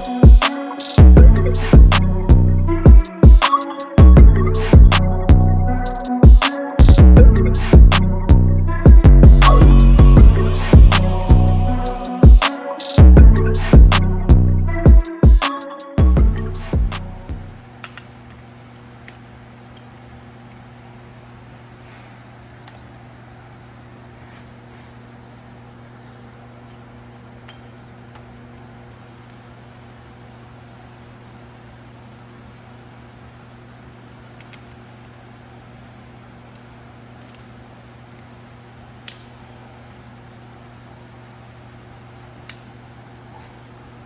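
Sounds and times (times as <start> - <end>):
low electrical hum: 1.0 - 2.9, 4.0 - 6.1, 6.9 - 12.2, 13.1 - 14.9, 16.0 - 44.0
shop equipment humming: 4.1 - 12.5.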